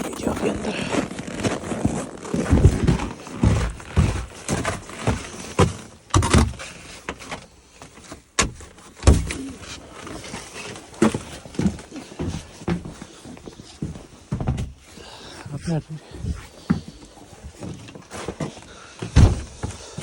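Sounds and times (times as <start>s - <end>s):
thumps and knocks of handling: 16.7s - 20.0s.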